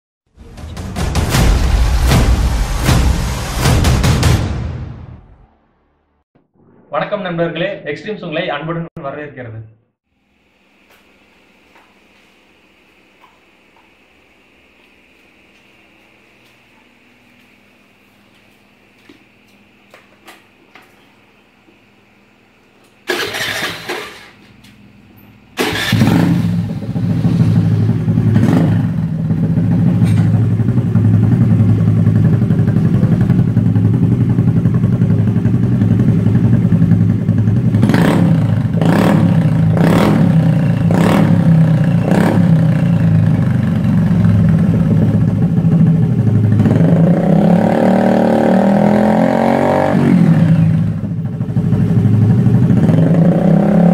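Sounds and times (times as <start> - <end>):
scooter engine starting and idling: 23.0 - 24.4, 25.6 - 47.6, 50.2 - 53.9
scooter engine revving: 23.1 - 24.3, 25.6 - 53.9.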